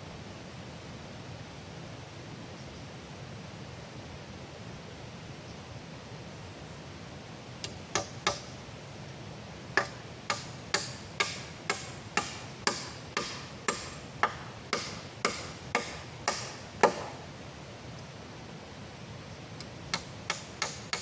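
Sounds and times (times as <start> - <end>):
steady background hiss: 0.0 - 21.0
tool chopping wood: 7.7 - 8.5, 9.8 - 17.2, 19.9 - 21.0.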